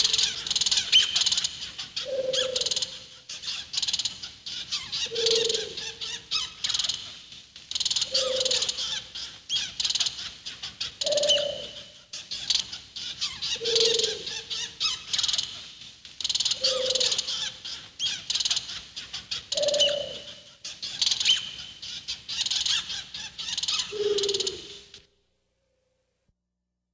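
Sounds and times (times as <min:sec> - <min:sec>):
high-pitched chirping and twittering: 0:00.0 - 0:25.0
low owl-like hoot: 0:02.0 - 0:03.0, 0:05.0 - 0:06.2, 0:08.1 - 0:08.8, 0:11.0 - 0:12.0, 0:13.5 - 0:14.5, 0:16.6 - 0:17.2, 0:19.5 - 0:20.4, 0:23.9 - 0:25.0.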